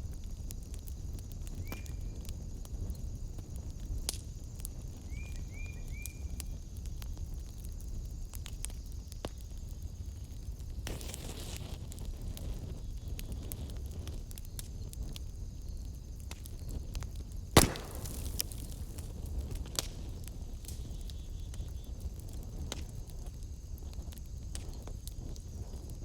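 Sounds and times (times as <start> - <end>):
fire flames rumbling: 0.0 - 5.1, 6.3 - 26.0
fire crackling: 0.0 - 26.0
loud wood pop: 17.6 - 19.0.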